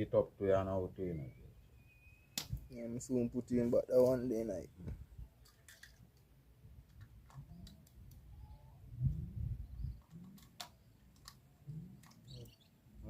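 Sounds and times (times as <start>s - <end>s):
small clicks and taps: 10.0s - 11.4s.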